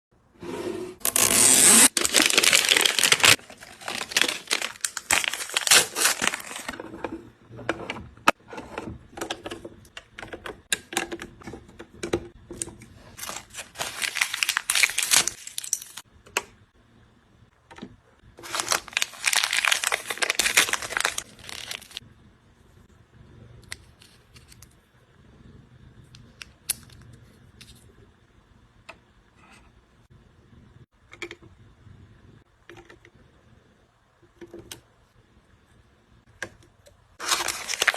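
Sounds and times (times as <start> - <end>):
plastic packaging crinkling and tearing: 1.1 - 6.7, 13.2 - 16.0, 18.4 - 22.0, 37.2 - 37.9.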